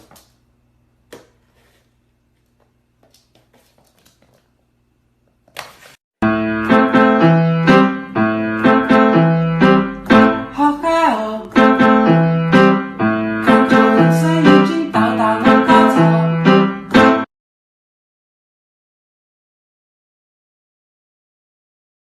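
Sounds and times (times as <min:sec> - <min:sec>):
piano tune with bass and beat: 0:06.2 - 0:17.3.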